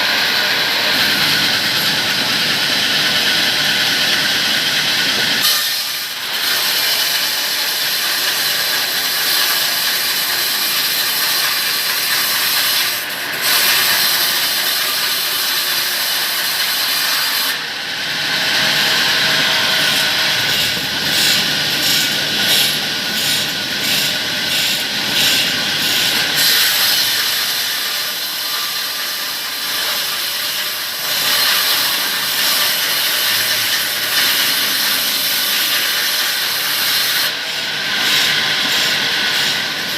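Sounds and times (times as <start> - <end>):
saw cutting through wood: 0.0 - 39.9.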